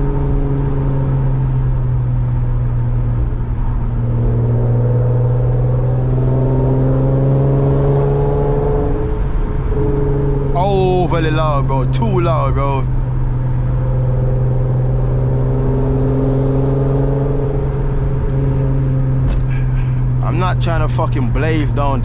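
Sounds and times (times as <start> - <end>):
car engine and exhaust droning: 0.0 - 22.0.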